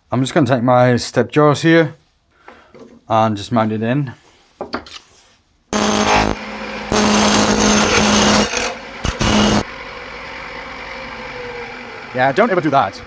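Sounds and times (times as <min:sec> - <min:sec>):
gouge cutting spinning wood: 0:05.8 - 0:09.8
lathe running hum: 0:05.8 - 0:13.0.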